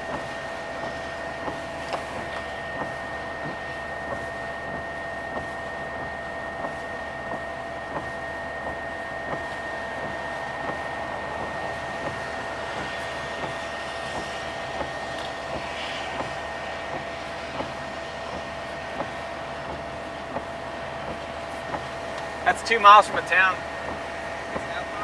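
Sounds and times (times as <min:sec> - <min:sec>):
car cabin noise: 0:01.4 - 0:25.0
faint steady tones: 0:16.2 - 0:25.0.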